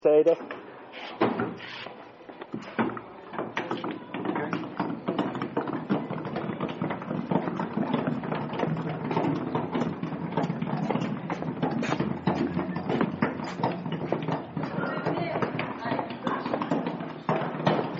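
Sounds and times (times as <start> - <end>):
washing machine rattling on wheels: 3.6 - 17.9.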